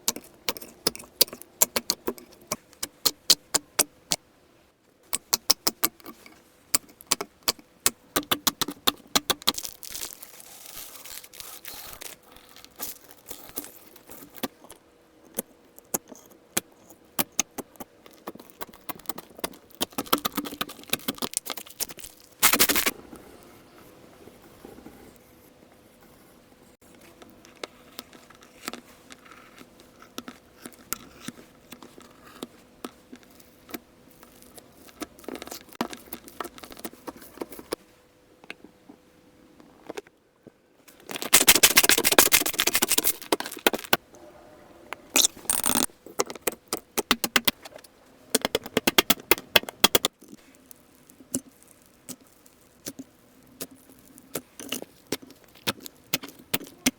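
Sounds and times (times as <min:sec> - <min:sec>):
slime clicking and crackling: 0:06.8 - 0:14.7, 0:15.3 - 0:22.9, 0:41.0 - 0:44.0, 0:48.3 - 0:56.9.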